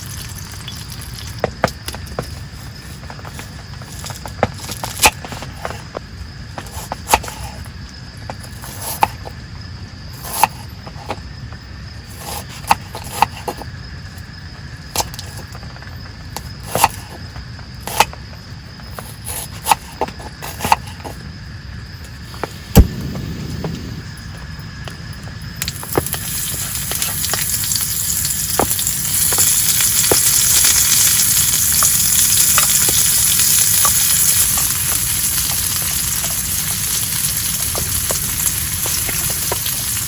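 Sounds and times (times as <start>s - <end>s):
faint high buzz: 22.1s - 27.1s
steady low rumble: 22.6s - 27.3s.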